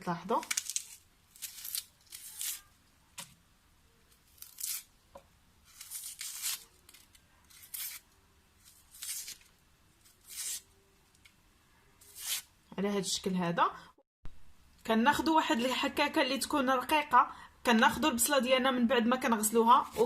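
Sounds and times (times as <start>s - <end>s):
onion skin crackling as peeled: 0.3s - 3.3s, 4.1s - 11.3s, 12.0s - 12.5s.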